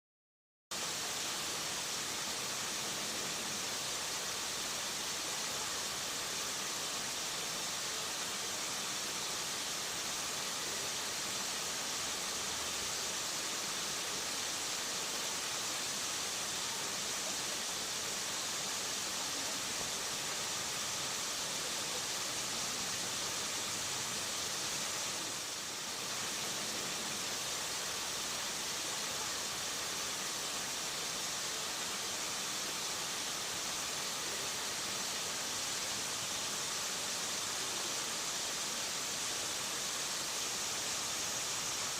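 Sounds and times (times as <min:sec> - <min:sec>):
waterfall rushing: 0:00.8 - 0:41.9.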